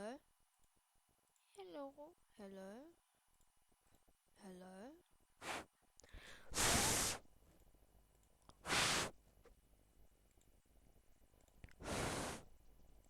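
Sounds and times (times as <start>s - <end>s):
breath puffs on a microphone: 5.4s - 7.3s, 8.6s - 9.2s, 11.8s - 12.5s.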